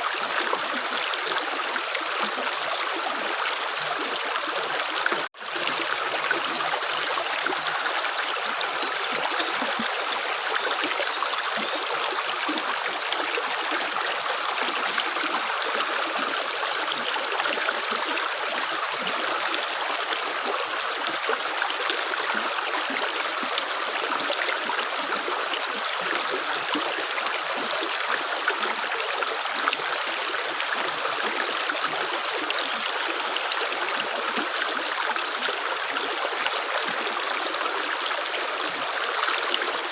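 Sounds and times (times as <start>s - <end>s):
stream water babbling: 0.0s - 39.9s.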